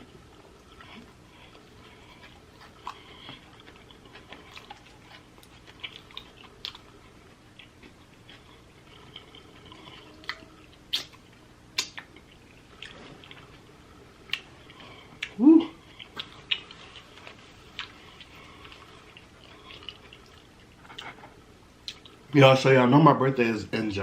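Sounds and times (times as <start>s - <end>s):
person chewing food: 0.0s - 22.3s
mouth clicks and smacks: 10.2s - 11.2s, 11.8s - 13.0s.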